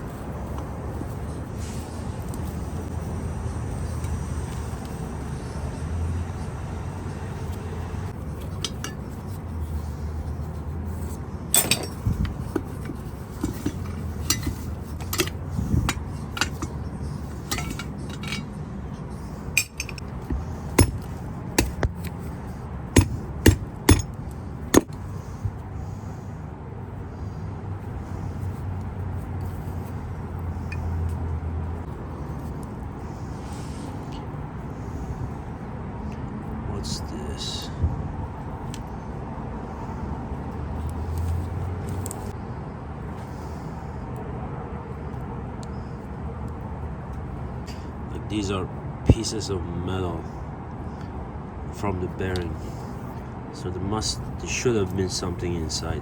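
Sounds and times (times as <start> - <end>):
tools knocking on metal: 11.6 - 15.4, 23.0 - 24.2.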